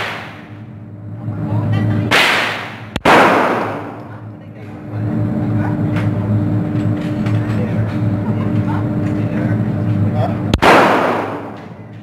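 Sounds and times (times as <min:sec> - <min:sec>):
gunshots with echo: 0:00.0 - 0:00.5, 0:02.1 - 0:04.0, 0:10.6 - 0:11.6
steady low hum: 0:00.0 - 0:12.0.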